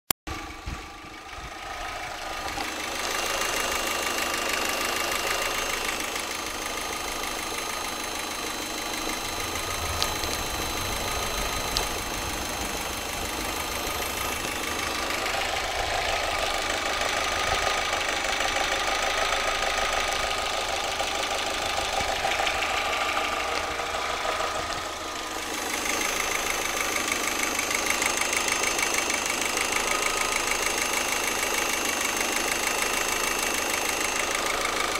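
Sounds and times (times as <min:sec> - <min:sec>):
car engine idling: 0:00.3 - 0:34.9
engine ticking knock: 0:00.3 - 0:34.9
sharp clicks: 0:02.5 - 0:17.8.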